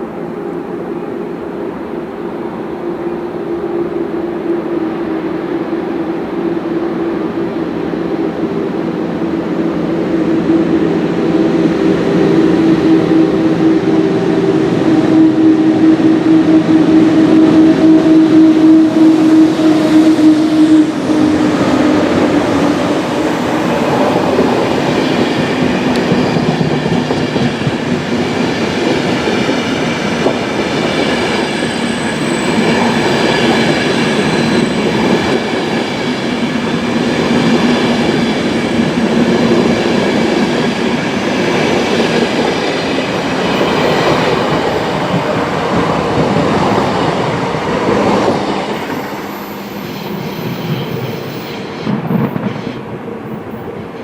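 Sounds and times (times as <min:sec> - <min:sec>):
high squealing wheels: 0:12.2 - 0:27.7, 0:28.5 - 0:38.4, 0:41.7 - 0:47.6, 0:48.2 - 0:54.0
train wheel clatter: 0:21.8 - 0:54.0.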